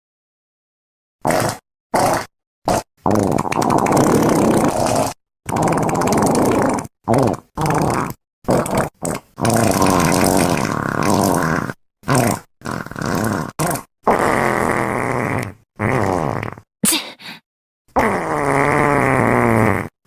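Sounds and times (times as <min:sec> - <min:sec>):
fart sound effects: 0:01.2 - 0:17.2, 0:18.0 - 0:20.0.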